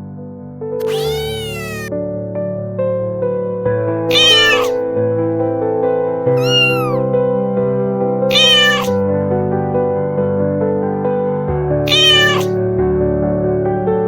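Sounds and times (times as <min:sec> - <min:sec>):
background keyboard music: 0:00.0 - 0:14.0
kitten meowing: 0:00.8 - 0:01.9, 0:04.1 - 0:04.8, 0:06.3 - 0:07.1, 0:08.3 - 0:09.0, 0:11.9 - 0:12.6.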